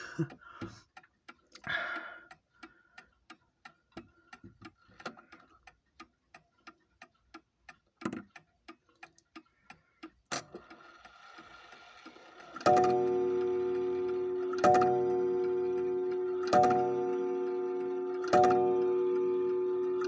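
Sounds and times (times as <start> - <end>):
clock ticking: 0.0 - 20.0
faint clock whirr: 0.2 - 20.0
sharp clock click: 10.0 - 20.0.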